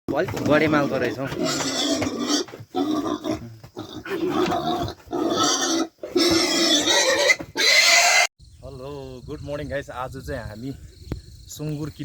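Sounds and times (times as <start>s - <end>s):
pigs squealing: 0.6s - 8.3s.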